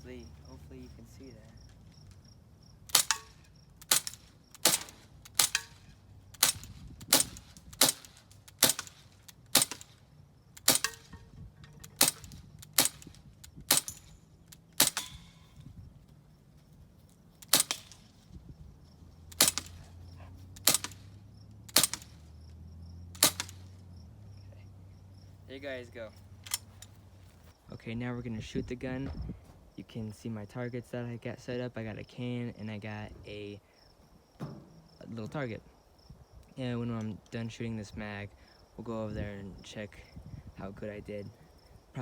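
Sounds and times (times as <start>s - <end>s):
bb pistol firing: 2.9s - 15.6s, 17.4s - 18.2s, 19.3s - 22.4s, 23.1s - 23.8s.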